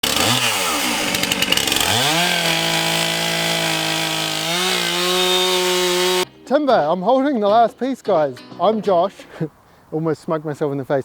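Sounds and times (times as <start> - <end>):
chainsaw engine revving: 0.0 - 6.2.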